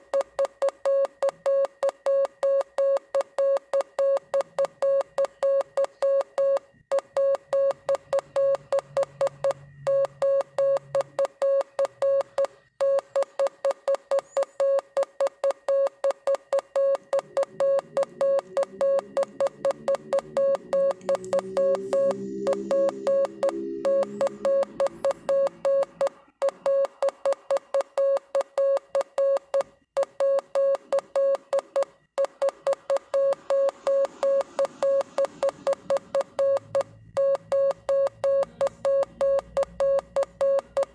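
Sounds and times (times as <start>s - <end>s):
morse code beeps: 0.0s - 40.9s.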